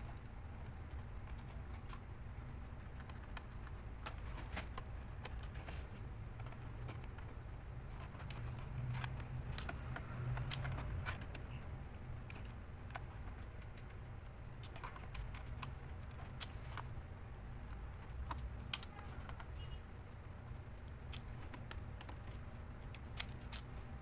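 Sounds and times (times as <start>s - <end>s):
steady low hum: 0.0s - 24.0s
clicks on plastic laptop casing: 2.9s - 16.9s.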